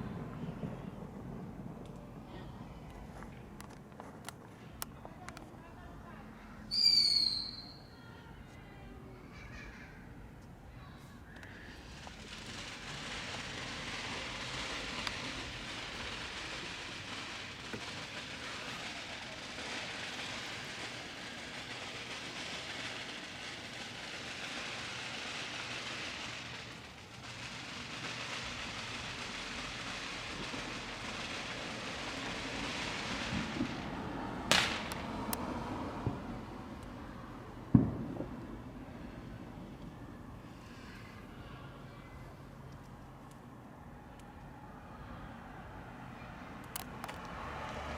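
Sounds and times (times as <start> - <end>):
fireworks hissing and crackling: 0.0 - 7.9, 10.4 - 43.3, 44.2 - 47.9
sharp firework bang: 27.2 - 36.2, 37.7 - 38.4.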